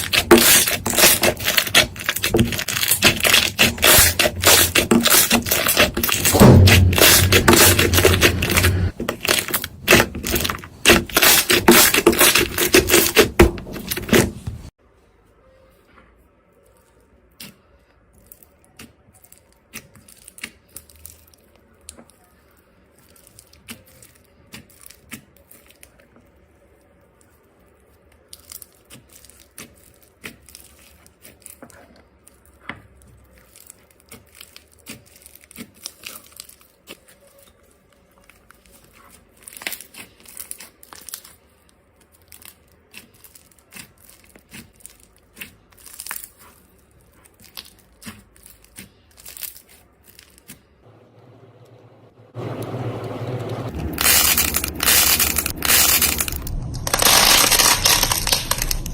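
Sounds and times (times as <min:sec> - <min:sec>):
slime crackling and popping: 0:00.0 - 0:14.2, 0:33.2 - 0:50.7, 0:53.7 - 0:58.9.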